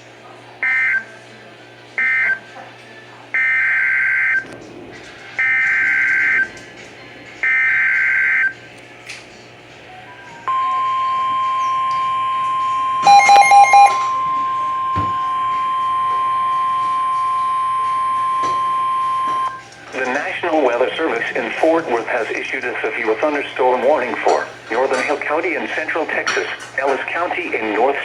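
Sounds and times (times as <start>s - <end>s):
steady attention tone: 10.4s - 19.6s
cluster of beeps: 10.5s - 19.6s.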